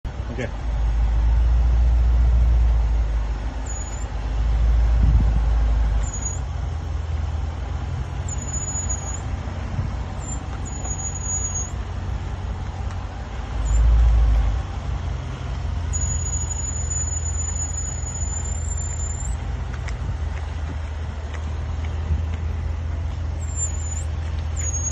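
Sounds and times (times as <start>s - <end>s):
road rumble: 0.0s - 24.9s
loud deep rumbles: 0.1s - 18.4s
high-pitched brake squeal: 3.6s - 4.1s, 6.0s - 6.5s, 8.2s - 9.3s, 10.2s - 11.8s, 13.6s - 14.0s, 15.9s - 19.4s, 23.4s - 24.9s.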